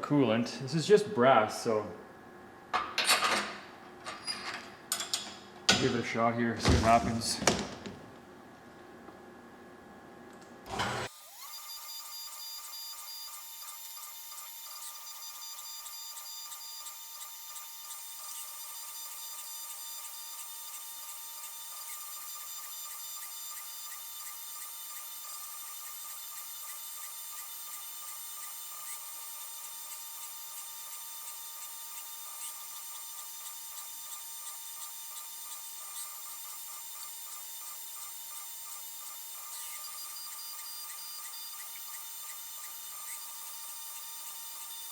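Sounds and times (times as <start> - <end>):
cnc mill cutting brass: 10.7 - 44.9.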